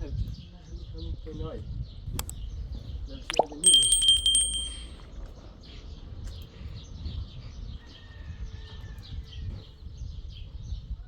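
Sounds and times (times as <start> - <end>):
small birds chirping: 0.0 - 4.9
high metallic ringing tone: 3.3 - 5.0.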